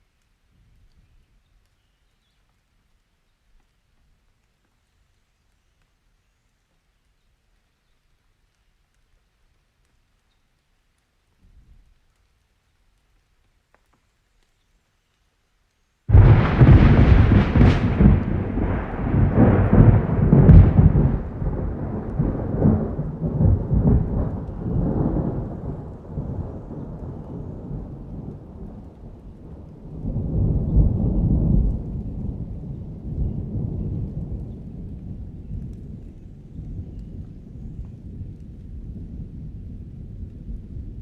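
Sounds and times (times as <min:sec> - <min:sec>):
thunder clap and rumble: 0:16.1 - 0:41.0.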